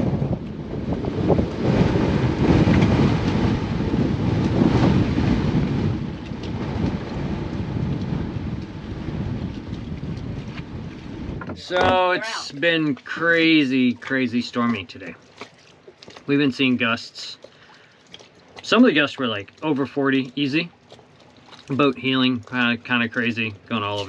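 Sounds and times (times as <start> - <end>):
gusty wind on microphone: 0.0 - 12.4.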